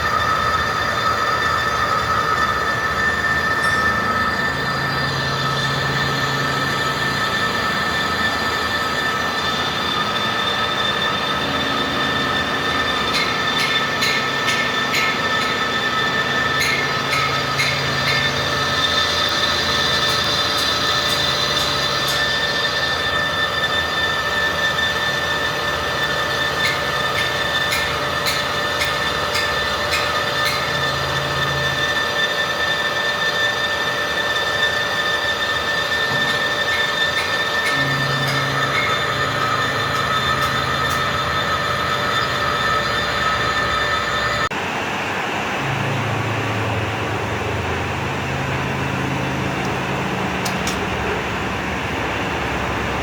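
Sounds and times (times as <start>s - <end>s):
metal lathe cutting steel: 0.0s - 53.0s.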